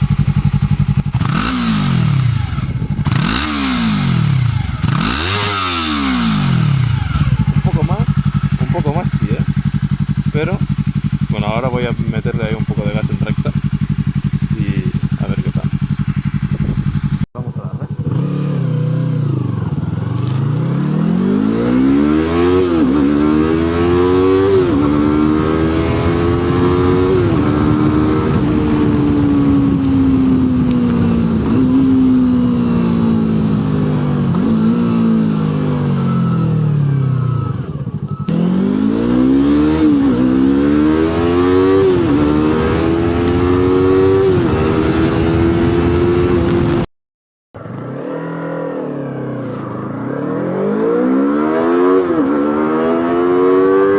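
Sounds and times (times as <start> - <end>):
motorcycle engine accelerating: 0.0 - 46.9, 47.6 - 53.9.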